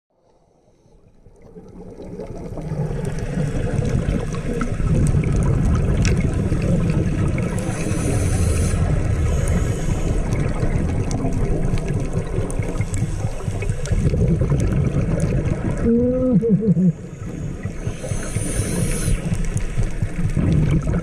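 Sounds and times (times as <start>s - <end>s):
underwater low rumble: 0.3s - 21.0s
high hiss: 7.4s - 10.8s, 16.9s - 19.8s.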